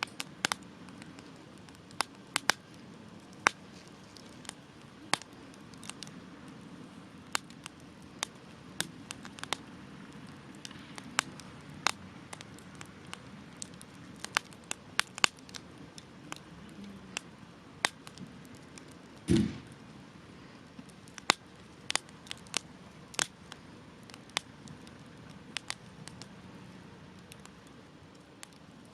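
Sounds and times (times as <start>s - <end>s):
campfire crackling and popping: 0.0s - 28.9s
low hiss of flame: 0.0s - 28.9s.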